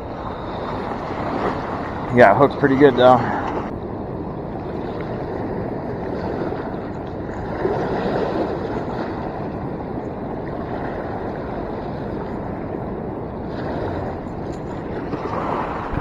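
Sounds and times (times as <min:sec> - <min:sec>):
river water rushing: 0:00.0 - 0:03.7.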